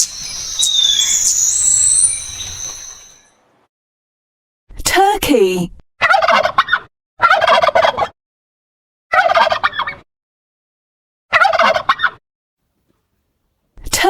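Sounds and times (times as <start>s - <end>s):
turkey gobbling: 6.1s - 8.1s, 9.2s - 9.9s, 11.4s - 12.1s.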